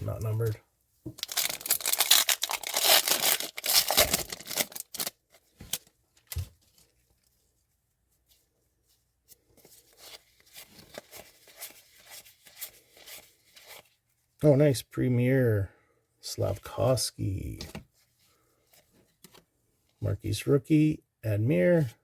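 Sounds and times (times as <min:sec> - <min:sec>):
cards rustling: 0:00.1 - 0:07.3, 0:09.3 - 0:14.0
wrapper tearing and crinkling: 0:01.2 - 0:06.3.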